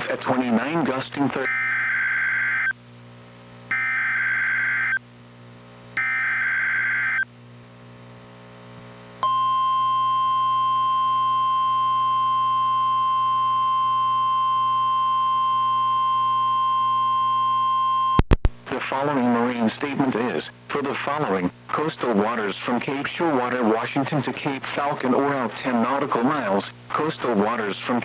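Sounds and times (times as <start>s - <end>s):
steady warning alarm tone: 3.7s - 5.0s, 6.0s - 7.2s, 9.2s - 18.2s.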